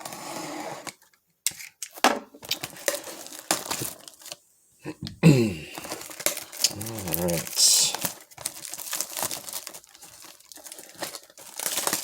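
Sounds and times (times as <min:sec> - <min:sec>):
shrink wrap and cardboard tearing: 0:02.4 - 0:04.4, 0:05.8 - 0:12.0.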